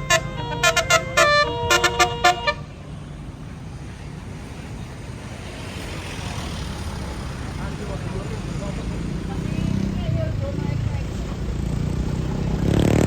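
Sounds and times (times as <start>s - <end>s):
bus horn playing a tune: 0.0s - 3.2s
engine and traffic rumble: 0.0s - 13.0s.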